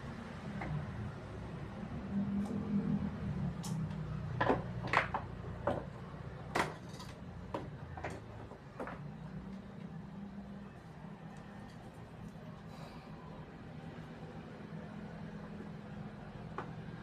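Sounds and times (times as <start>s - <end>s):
tools clicking and knocking: 3.6s - 9.1s.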